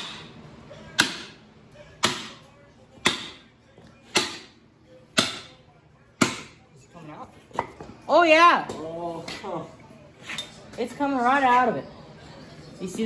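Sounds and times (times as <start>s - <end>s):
hammer striking steel punch: 1.0s - 1.4s, 2.0s - 2.4s, 3.0s - 3.4s, 4.1s - 4.5s, 5.2s - 5.5s, 6.2s - 6.5s.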